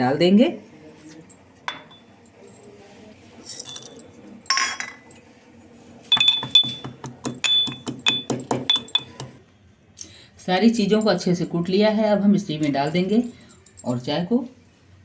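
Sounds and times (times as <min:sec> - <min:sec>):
mortar and pestle pounding: 0:06.1 - 0:09.4.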